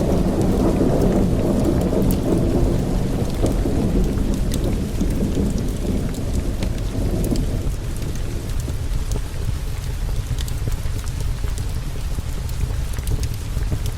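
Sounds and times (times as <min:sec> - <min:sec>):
rolling thunder rumble: 0:00.0 - 0:10.1
steady rain: 0:00.0 - 0:13.9.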